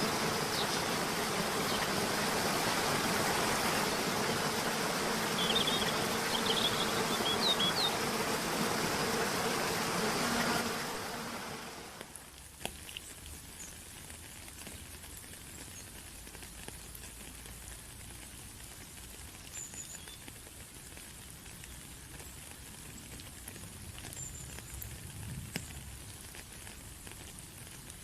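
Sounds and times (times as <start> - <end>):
water pattering: 0.0 - 8.8
high bird chirps: 5.2 - 8.0
light water drips: 12.0 - 28.0.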